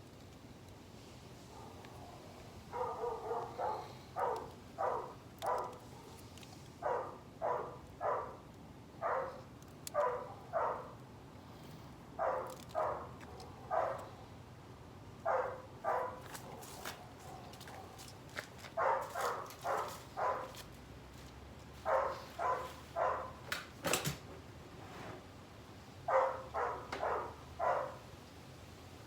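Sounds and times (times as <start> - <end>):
dog barking: 1.5 - 6.2, 6.8 - 8.4, 9.0 - 11.0, 12.2 - 14.2, 15.2 - 18.0, 18.8 - 20.6, 21.8 - 23.4, 26.1 - 28.1.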